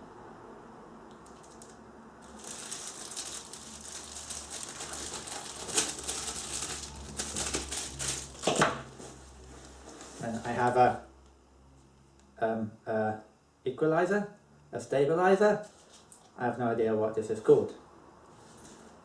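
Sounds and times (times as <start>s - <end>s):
plastic wrapping crinkling: 1.2s - 10.8s.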